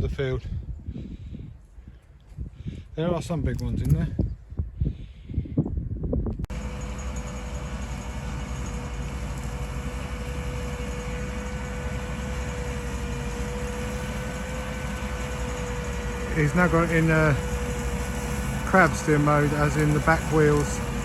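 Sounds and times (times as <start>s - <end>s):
low engine drone: 6.5s - 21.0s
steady machine whine: 6.5s - 21.0s.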